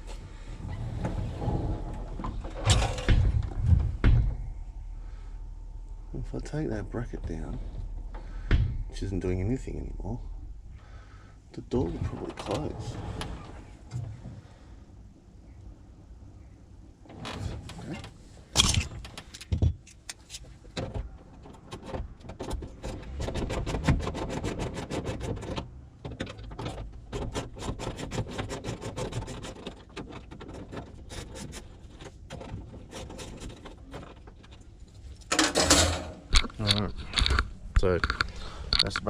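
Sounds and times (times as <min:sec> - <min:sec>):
low rumble: 0:00.0 - 0:13.9.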